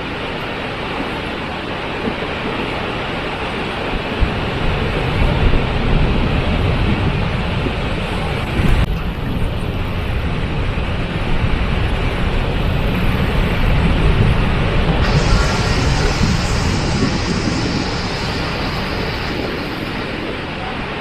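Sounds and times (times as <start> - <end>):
waterfall rushing: 15.0 - 21.0.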